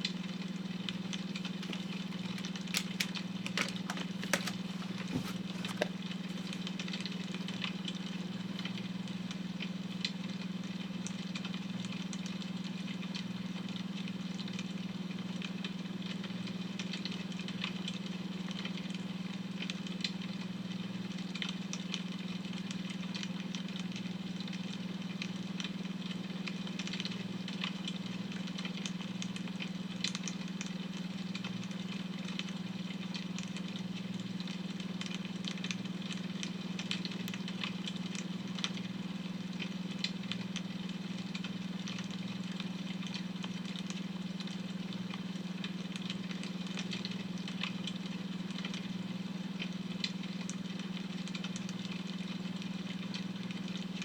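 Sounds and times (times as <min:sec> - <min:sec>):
wood fire crackling: 0:00.9 - 0:08.3.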